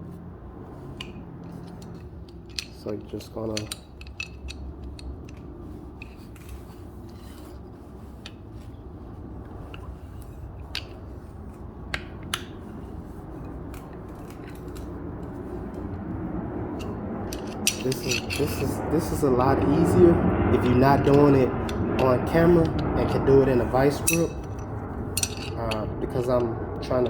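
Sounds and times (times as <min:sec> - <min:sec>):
sharp metal clicks: 0:01.0 - 0:06.6, 0:16.8 - 0:19.9, 0:20.6 - 0:27.0
fitting rubbing inside rubber hose: 0:03.5 - 0:08.8.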